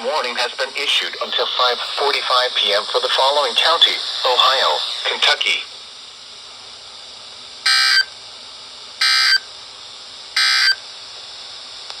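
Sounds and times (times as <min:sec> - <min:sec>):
faint radio hiss: 0:00.0 - 0:06.0.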